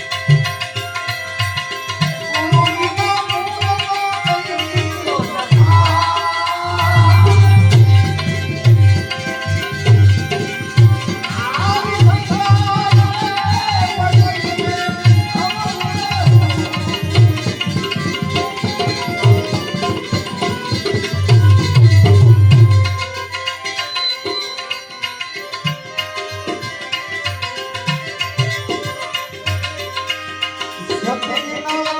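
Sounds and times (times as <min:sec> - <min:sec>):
hand drums beating: 0:00.0 - 0:31.9
light percussion: 0:00.0 - 0:31.9
melody instrument: 0:06.6 - 0:11.2.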